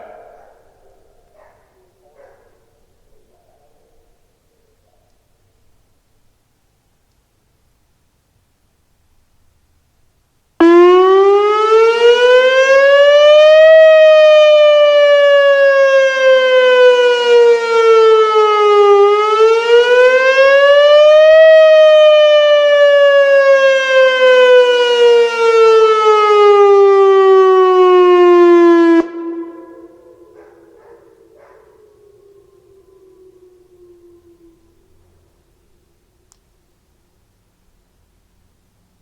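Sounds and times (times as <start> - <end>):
tornado warning siren wailing: 10.6 - 36.3.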